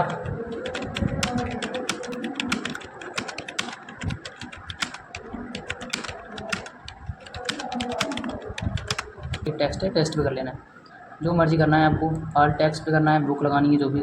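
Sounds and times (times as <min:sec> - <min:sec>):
laptop keyboard typing: 0:00.0 - 0:09.6.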